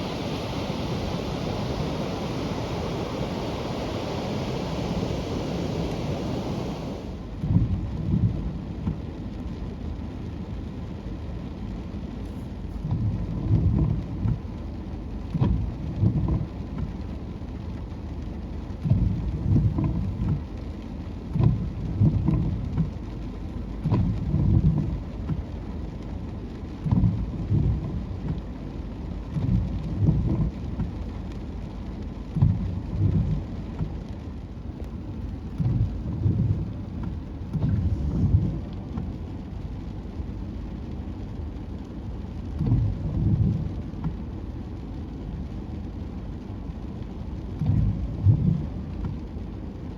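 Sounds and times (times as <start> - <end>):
steady rushing noise: 0.0 - 7.6.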